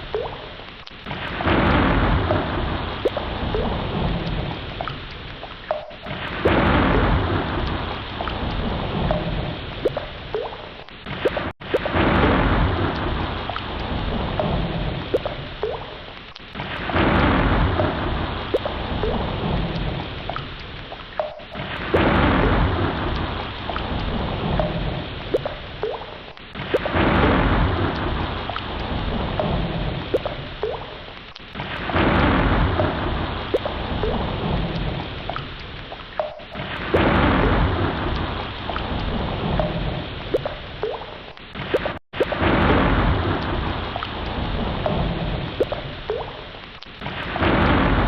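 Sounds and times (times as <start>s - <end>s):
water drops plinking: 0.0s - 0.6s, 2.2s - 6.7s, 7.6s - 12.1s, 12.9s - 16.1s, 17.7s - 27.0s, 27.9s - 28.7s, 29.3s - 31.0s, 32.7s - 42.4s, 45.6s - 46.4s
heavy rain falling: 0.0s - 48.0s
low rumble of thunder: 1.1s - 4.8s, 6.0s - 10.1s, 11.1s - 15.5s, 16.6s - 20.4s, 21.6s - 25.6s, 26.6s - 30.8s, 31.6s - 35.3s, 36.6s - 40.6s, 42.3s - 46.3s, 47.0s - 48.0s.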